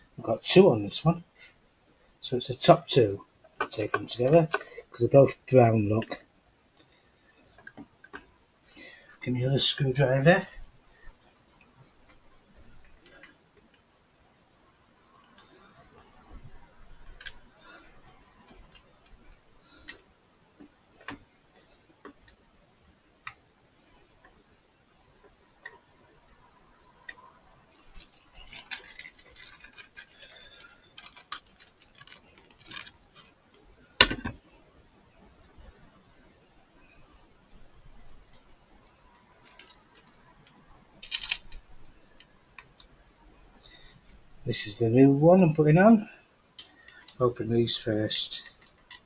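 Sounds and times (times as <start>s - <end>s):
screwdriver and metal parts clicking: 27.8s - 33.3s, 39.4s - 40.2s, 41.0s - 41.6s.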